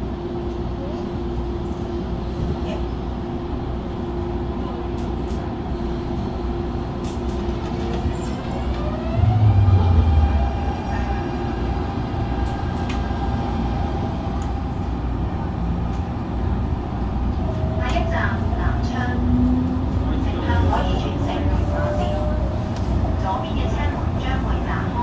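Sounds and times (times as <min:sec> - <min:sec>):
train running rumble: 0:00.0 - 0:25.0
electric train traction whine: 0:08.2 - 0:15.4.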